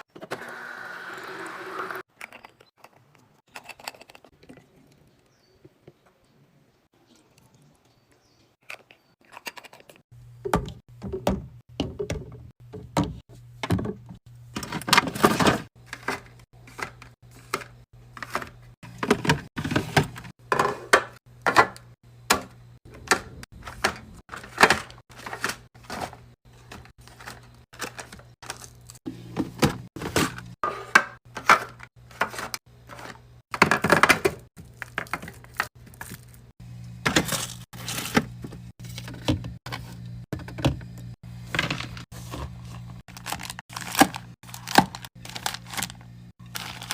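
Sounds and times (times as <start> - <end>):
fridge hum: 10.1 - 46.9
containers thunking and clacking: 10.4 - 36.2.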